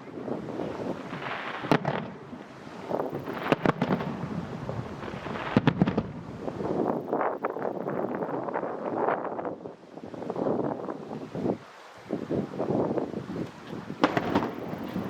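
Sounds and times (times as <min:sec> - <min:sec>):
fireworks rumble and crackle: 0:00.0 - 0:09.6, 0:12.4 - 0:15.0
fireworks booming: 0:00.3 - 0:07.3, 0:14.0 - 0:15.0.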